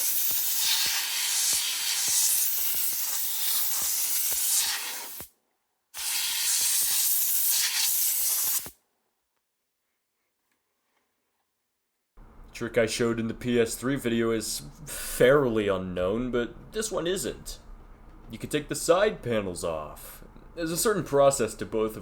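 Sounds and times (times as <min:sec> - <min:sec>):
compressed air spraying: 0:00.0 - 0:05.3, 0:06.0 - 0:08.8.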